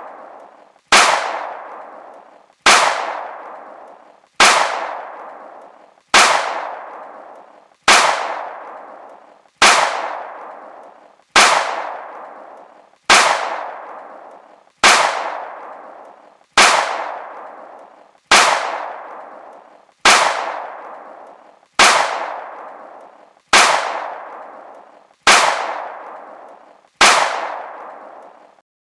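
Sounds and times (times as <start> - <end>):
gunshots with ringing echo: 0.0 - 28.6.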